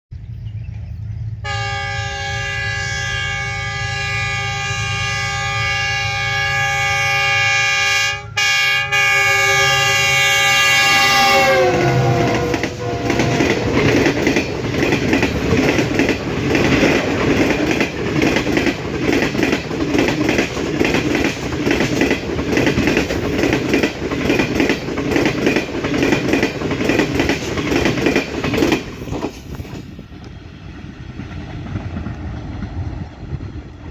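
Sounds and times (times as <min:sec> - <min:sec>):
train cars rumbling and clacking: 0:00.2 - 0:33.9
train horn: 0:01.4 - 0:14.2.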